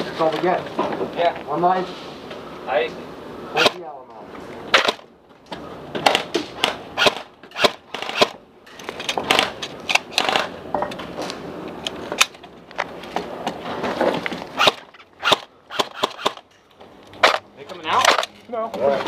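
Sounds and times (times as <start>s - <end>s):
airsoft gun shots: 4.7s - 5.0s, 6.0s - 8.4s, 14.6s - 16.4s.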